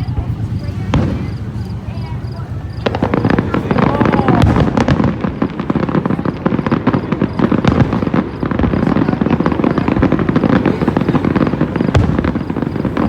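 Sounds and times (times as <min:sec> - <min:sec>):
fireworks popping and banging: 0:00.0 - 0:13.0.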